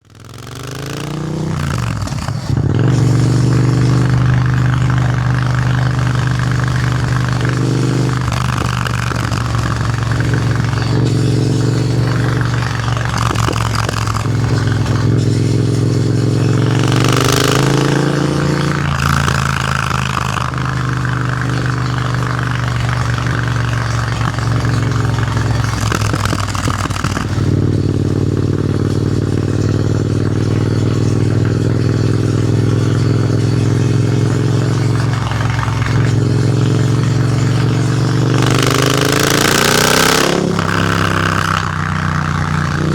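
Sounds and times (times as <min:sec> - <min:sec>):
motorcycle engine revving: 0:00.0 - 0:42.9.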